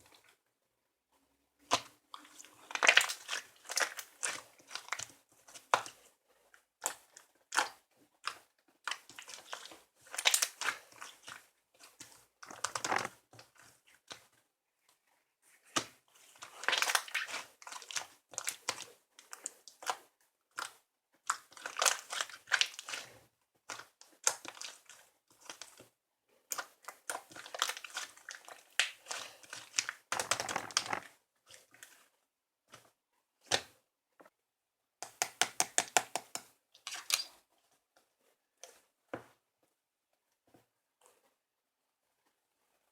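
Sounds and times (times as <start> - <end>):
crinkling and rustling: 27.2 - 33.0.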